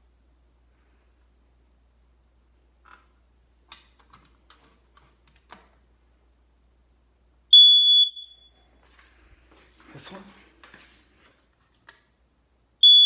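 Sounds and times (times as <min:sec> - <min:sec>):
faint clicks and taps: 0:03.7 - 0:05.8
smoke alarm beep: 0:07.5 - 0:08.7.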